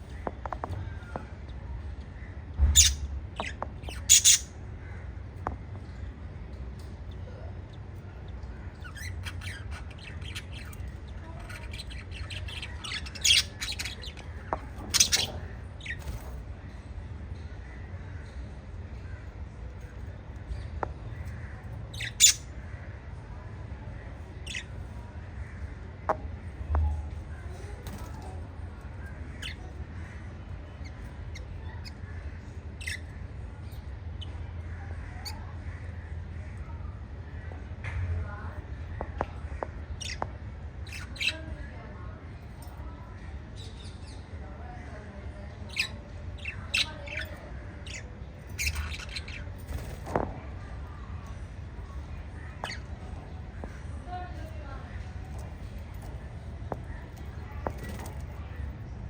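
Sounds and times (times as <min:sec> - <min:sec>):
low steady hum: 0:00.0 - 0:59.0
budgerigars chirping: 0:02.8 - 0:04.5, 0:08.8 - 0:16.2, 0:21.9 - 0:22.5, 0:45.7 - 0:50.0
harsh bird squawks: 0:04.0 - 0:04.5.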